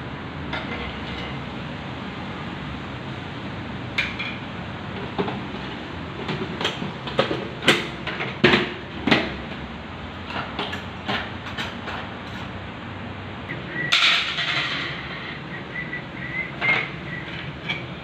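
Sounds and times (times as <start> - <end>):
steady background noise: 0.0 - 18.0
sharp knocks and clatters: 13.9 - 15.4.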